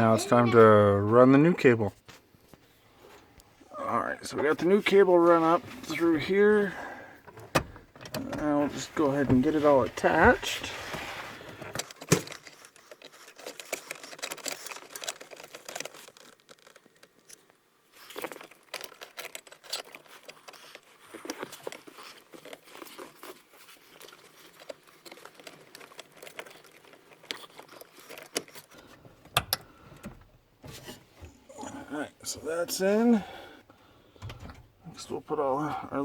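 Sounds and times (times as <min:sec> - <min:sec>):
hands rustling: 0:08.4 - 0:11.6.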